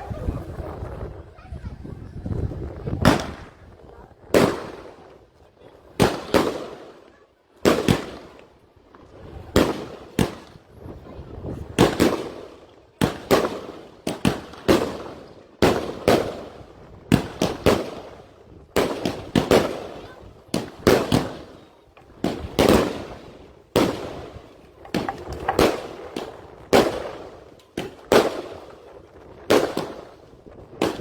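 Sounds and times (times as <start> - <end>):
fireworks bangs: 18.8 - 31.0.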